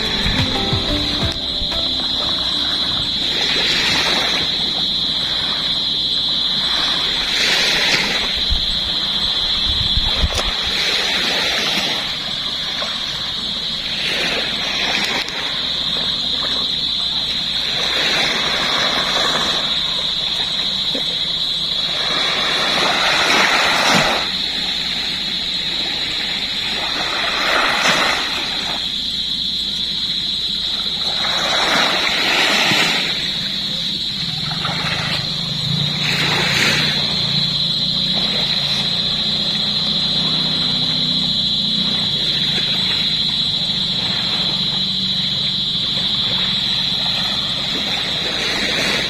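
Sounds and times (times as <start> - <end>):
high-pitched whine: 0.0 - 13.4, 32.9 - 49.0
sea waves breaking on beach: 0.0 - 29.6, 30.2 - 49.0.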